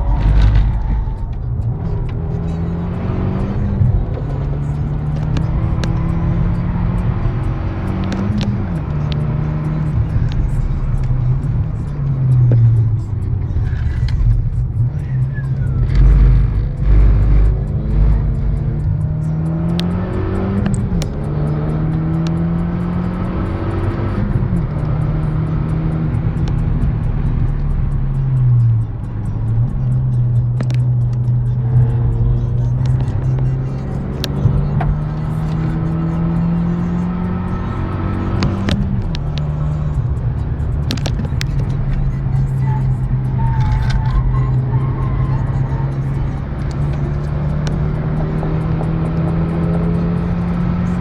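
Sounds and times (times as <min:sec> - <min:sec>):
car engine running hard: 0:00.0 - 0:51.0
gear change: 0:00.0 - 0:51.0
sharp clicks: 0:00.0 - 0:51.0.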